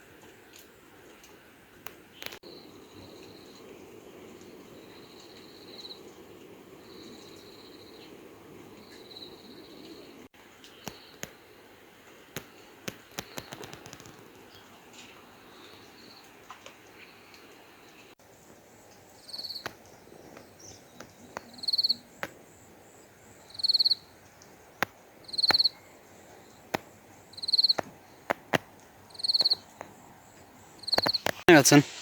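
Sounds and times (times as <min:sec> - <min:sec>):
insect chirping: 0:04.6 - 0:06.1, 0:06.8 - 0:10.1, 0:19.2 - 0:19.7, 0:20.6 - 0:24.2, 0:25.2 - 0:28.3, 0:29.1 - 0:32.0
sharp clicks: 0:30.9 - 0:31.5.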